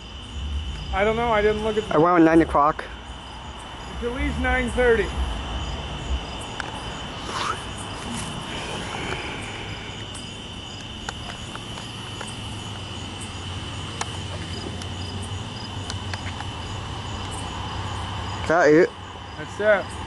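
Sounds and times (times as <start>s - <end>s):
freight train rumbling past: 0.0s - 10.1s
crickets chirping: 0.0s - 20.0s.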